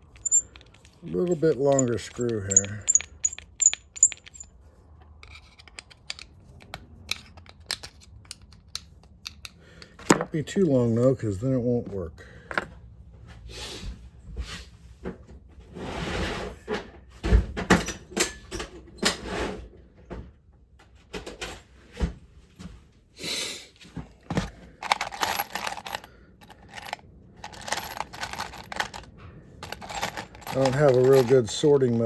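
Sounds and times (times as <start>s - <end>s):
scraping: 0.0s - 4.5s, 24.3s - 32.0s
metal parts rattling and clinking: 0.0s - 10.4s, 24.3s - 32.0s.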